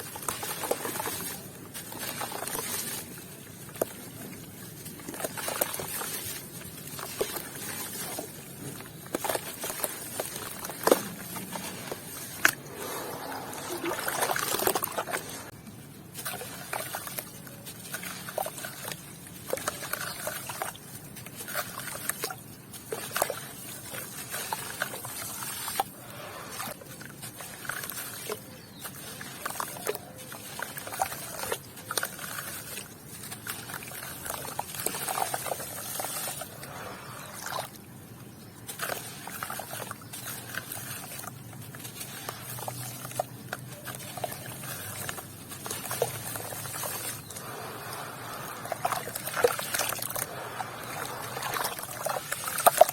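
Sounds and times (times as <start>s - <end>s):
watery trickling: 0.0s - 15.5s, 16.1s - 52.9s
cement crunching and crackling: 0.0s - 26.0s, 37.9s - 52.9s.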